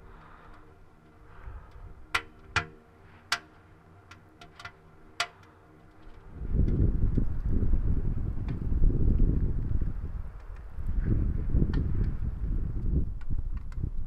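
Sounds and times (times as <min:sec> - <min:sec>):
low steady hum: 0:00.0 - 0:14.0
wind noise: 0:06.0 - 0:14.0
sharp clicks and pops: 0:12.8 - 0:14.0.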